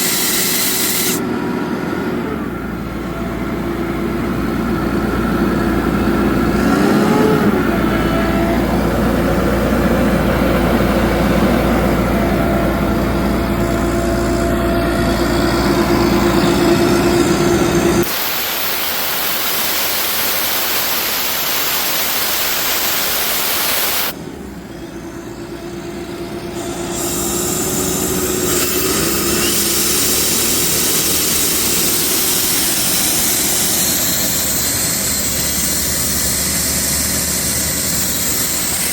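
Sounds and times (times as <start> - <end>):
compressed air hissing: 0.0 - 1.2, 16.0 - 24.2, 26.6 - 38.9
diesel engine running: 0.0 - 38.9.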